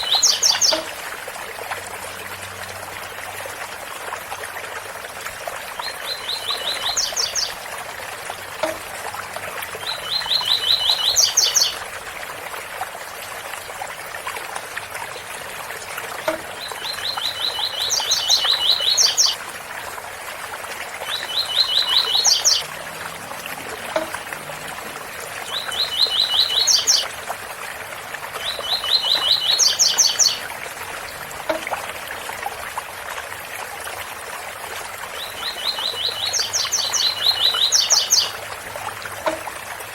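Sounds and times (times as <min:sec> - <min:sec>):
songbird singing: 0:00.0 - 0:00.9, 0:05.8 - 0:07.6, 0:09.8 - 0:11.8, 0:16.2 - 0:19.4, 0:21.0 - 0:22.9, 0:23.7 - 0:27.1, 0:28.4 - 0:30.5, 0:35.1 - 0:38.4
waterfall: 0:00.0 - 0:39.9.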